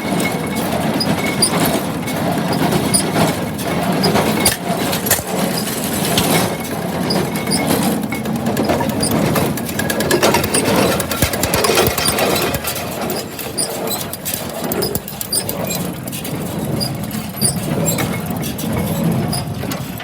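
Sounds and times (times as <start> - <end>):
tractor engine running: 0.0 - 20.0
baler clattering and clicking: 0.2 - 20.0.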